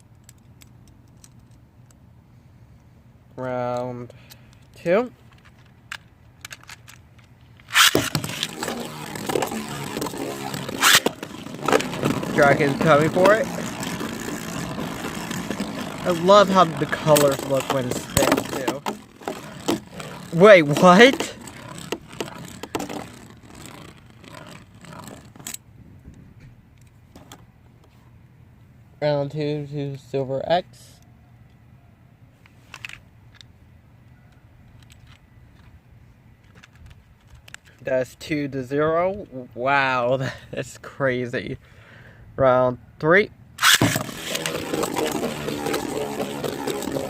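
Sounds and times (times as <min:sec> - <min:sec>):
loud launcher rip: 0:07.7 - 0:23.1, 0:43.6 - 0:47.0
spinning tops whirring in stadium: 0:07.7 - 0:25.4, 0:43.6 - 0:47.0.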